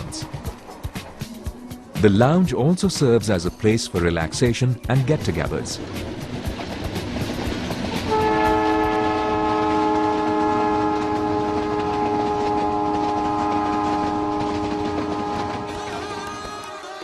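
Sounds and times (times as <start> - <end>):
moving train rumbling: 0.0 - 16.9
train horn: 8.0 - 16.9.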